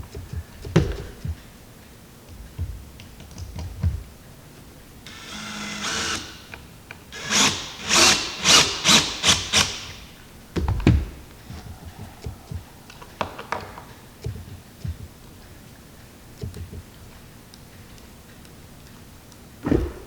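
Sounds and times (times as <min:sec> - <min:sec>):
cordless drill driving screws: 0:05.1 - 0:10.0.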